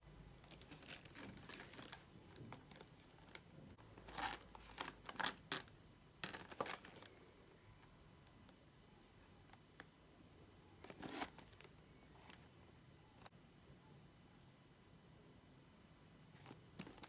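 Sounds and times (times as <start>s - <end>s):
crinkly wrapper rustling: 0.4s - 7.1s.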